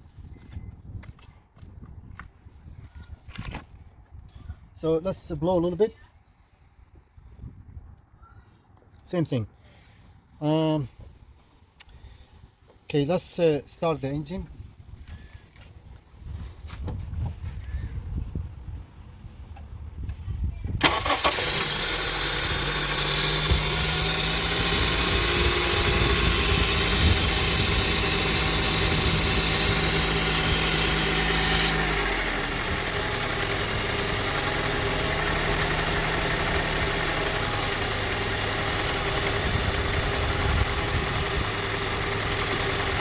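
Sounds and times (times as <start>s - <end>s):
car engine idling roughly: 20.8s - 43.0s.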